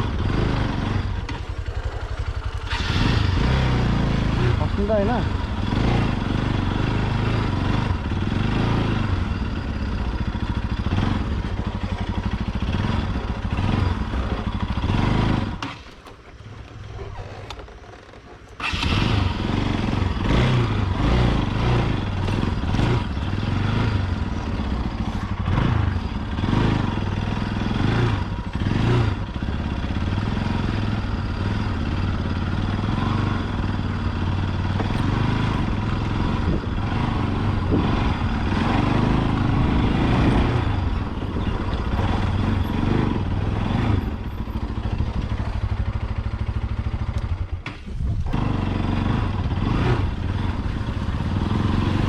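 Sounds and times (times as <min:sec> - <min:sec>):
motorcycle engine running: 0:00.0 - 0:52.0.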